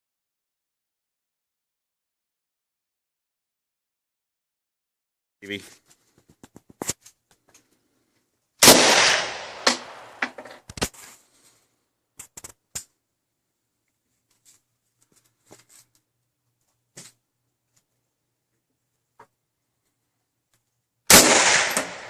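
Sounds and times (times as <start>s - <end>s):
loud rifle shot: 8.6s - 10.4s, 21.1s - 22.0s.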